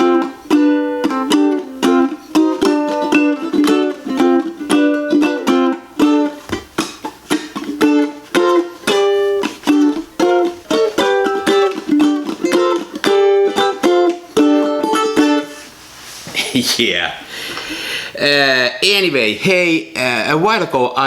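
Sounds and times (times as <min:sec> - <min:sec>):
ukulele strumming chords: 0:00.0 - 0:15.7.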